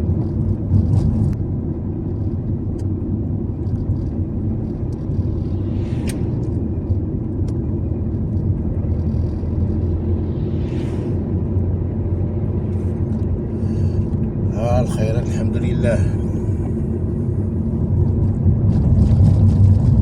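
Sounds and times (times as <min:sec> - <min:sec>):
car driving on road: 0:00.0 - 0:20.0
brief hissing swells: 0:05.4 - 0:06.7, 0:10.0 - 0:11.6.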